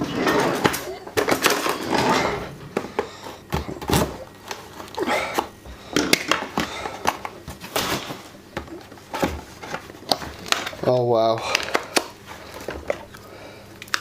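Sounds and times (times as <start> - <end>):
packaging rustling: 6.6 - 14.0.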